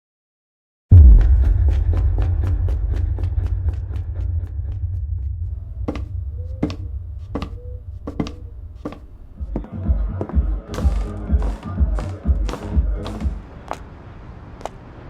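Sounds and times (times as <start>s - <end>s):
deep low rumble: 0.9s - 13.5s
sharp footsteps: 5.6s - 14.0s.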